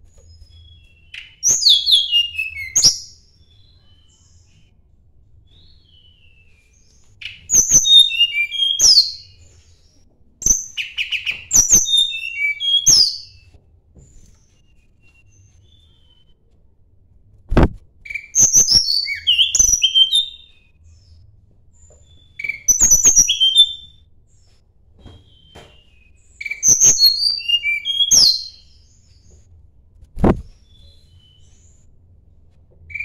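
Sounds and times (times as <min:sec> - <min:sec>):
bird singing high whistled notes: 0:00.3 - 0:04.5, 0:05.5 - 0:09.4, 0:10.4 - 0:13.4, 0:18.1 - 0:21.2, 0:22.1 - 0:24.1, 0:25.2 - 0:29.2.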